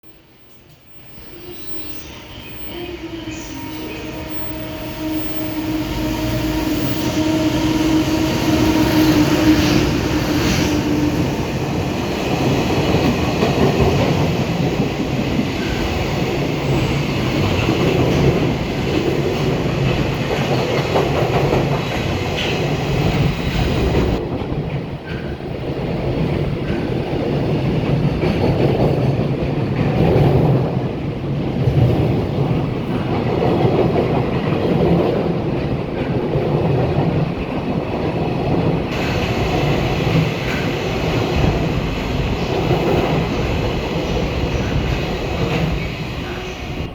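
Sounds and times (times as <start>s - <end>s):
electric locomotive hum: 0.9s - 24.6s
train wheels rumbling: 1.0s - 46.9s
clickety-clack over rail joints: 8.0s - 46.9s.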